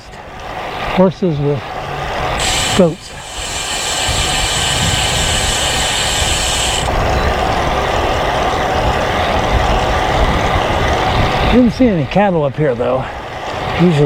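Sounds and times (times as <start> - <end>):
high steady buzz: 2.3 - 7.1
bike tyre noise: 2.4 - 7.1
wind buffeting microphone: 2.4 - 12.2.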